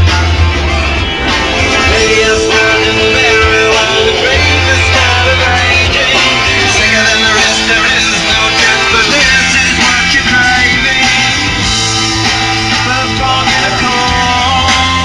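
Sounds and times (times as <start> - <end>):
rock music with singing: 0.0 - 15.0.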